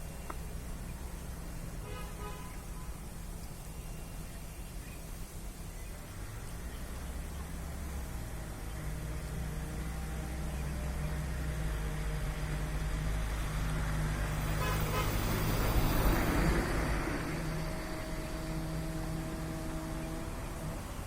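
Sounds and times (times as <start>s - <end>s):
steady low hum: 0.0s - 21.0s
road vehicle passing: 5.3s - 21.0s.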